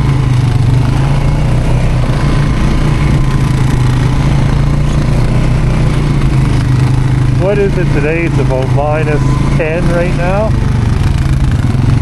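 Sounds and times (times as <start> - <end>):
atv engine running steadily: 0.0 - 12.0.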